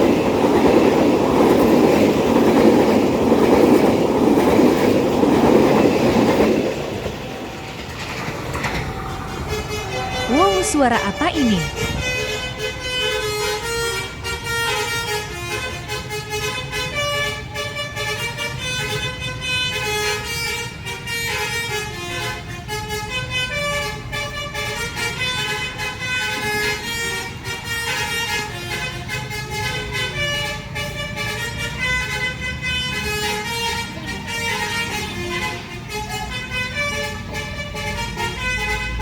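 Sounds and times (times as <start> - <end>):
bus musical horn tune: 9.0 - 39.0.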